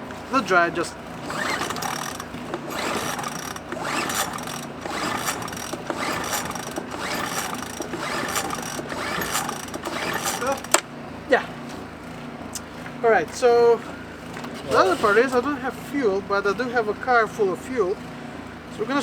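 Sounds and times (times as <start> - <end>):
generator pull-starter whirring: 0.0 - 19.0.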